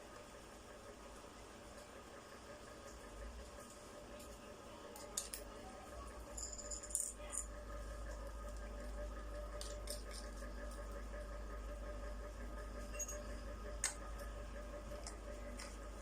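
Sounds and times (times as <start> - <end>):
bright clinks: 12.9 - 13.3.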